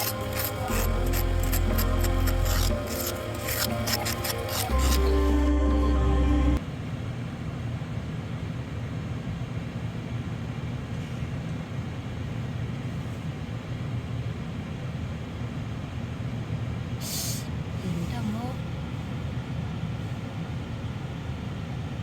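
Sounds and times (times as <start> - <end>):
brief hiss: 17.0 - 17.5.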